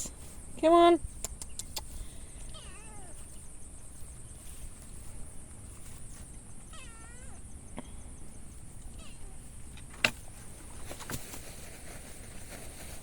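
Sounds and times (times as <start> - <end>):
cat meowing: 2.4 - 3.2, 6.7 - 7.4, 8.9 - 9.4.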